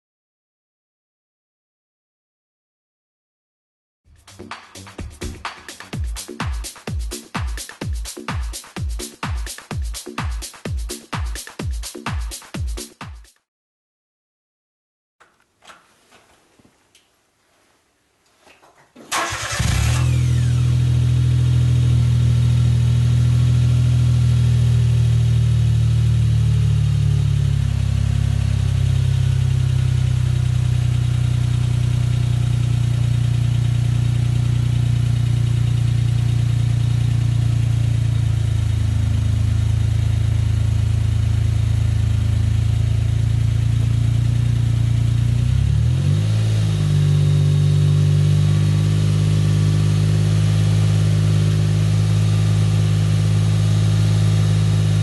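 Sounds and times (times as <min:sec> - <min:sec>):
car engine idling: 0:19.1 - 0:45.6.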